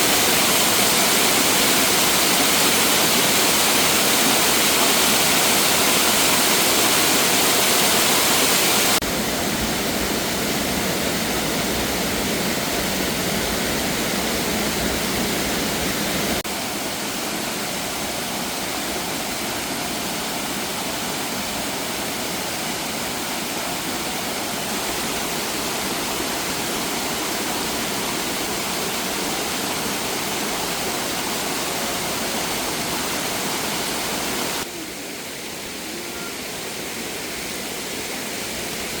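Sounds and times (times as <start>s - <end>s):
flowing water rushing: 0.0s - 39.0s.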